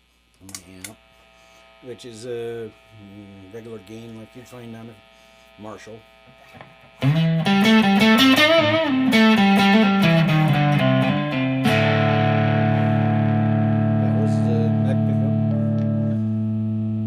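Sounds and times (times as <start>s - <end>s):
faint amp hum: 0.0s - 17.0s
electric guitar lick and chord: 6.2s - 17.0s.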